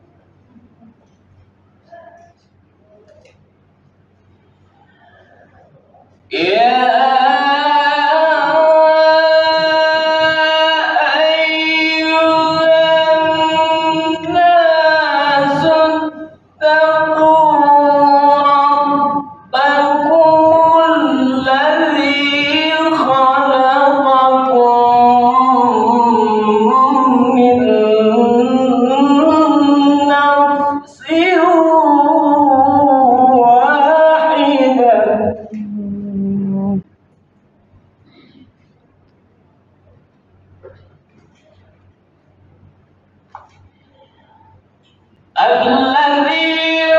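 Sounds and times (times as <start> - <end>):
man reciting melodically: 6.3 - 36.8, 45.3 - 46.9.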